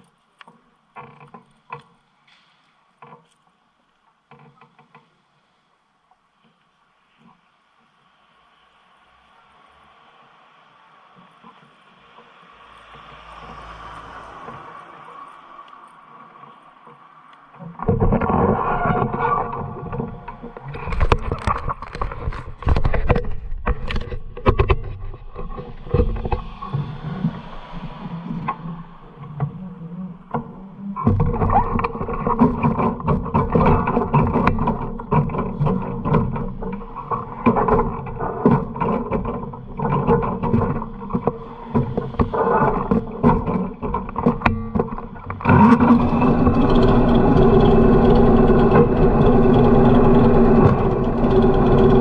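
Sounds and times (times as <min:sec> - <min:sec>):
motorcycle engine running: 0:45.6 - 0:52.0.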